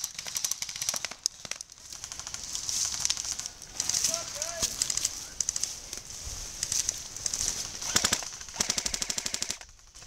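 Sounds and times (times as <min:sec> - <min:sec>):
airsoft guns firing full-auto: 0:07.8 - 0:09.6.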